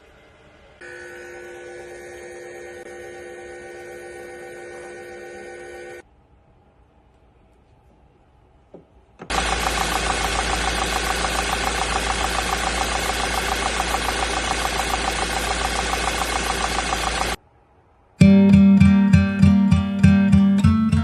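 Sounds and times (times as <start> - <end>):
car engine pulsing: 9.3 - 17.4.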